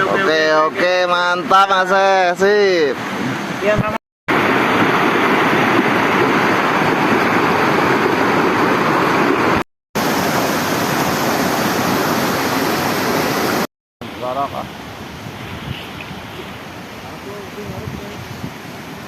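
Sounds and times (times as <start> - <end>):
waterfall rushing: 4.3 - 19.0.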